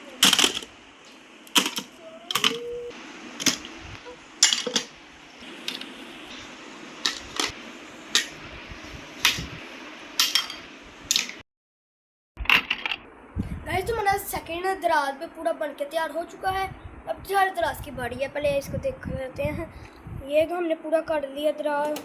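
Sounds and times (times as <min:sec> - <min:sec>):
hard toys knocking in drawer: 0:00.2 - 0:00.7, 0:01.6 - 0:02.6, 0:04.4 - 0:04.9.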